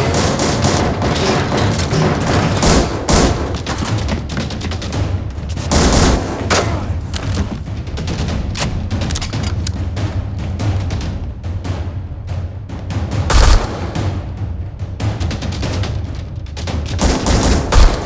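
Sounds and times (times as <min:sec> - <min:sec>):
gunfire volleys: 0:00.0 - 0:09.7, 0:13.3 - 0:14.2, 0:17.0 - 0:18.0
film score with low pulse: 0:00.0 - 0:18.0.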